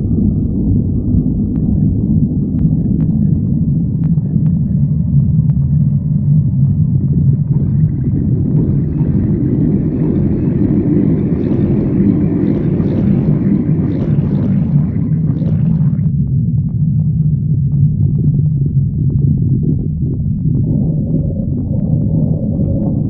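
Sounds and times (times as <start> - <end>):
stomach growling: 0.0 - 23.0.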